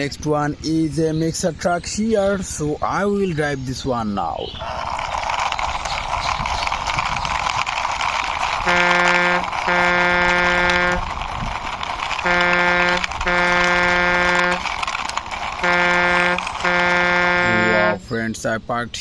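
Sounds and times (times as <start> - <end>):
toy truck wheels scraping: 4.6 - 18.1
truck horn honking: 8.6 - 11.1, 12.2 - 14.8, 15.6 - 18.1.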